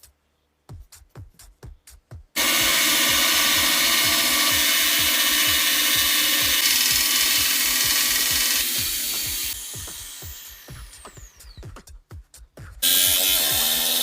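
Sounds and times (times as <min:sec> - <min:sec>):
electronic music with kick drum: 0:00.7 - 0:14.0
power tool running: 0:02.4 - 0:11.6, 0:12.8 - 0:14.0.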